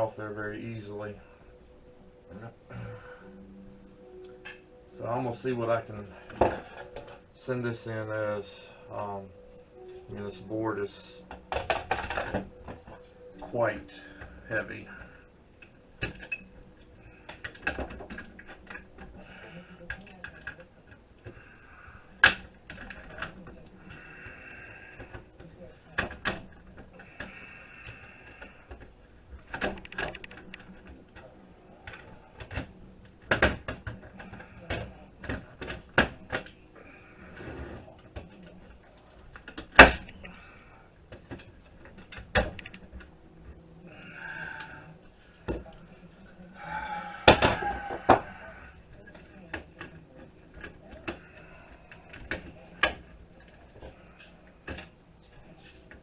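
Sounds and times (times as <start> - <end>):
circuit board and metal parts clattering: 28.4 - 36.6, 41.1 - 43.1.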